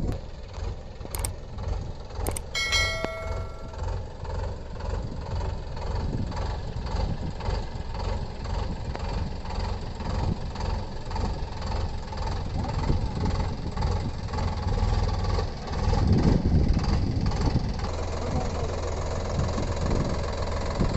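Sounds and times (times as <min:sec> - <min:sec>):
tractor diesel engine running: 0:00.0 - 0:20.9
short ringing tone: 0:02.6 - 0:03.9.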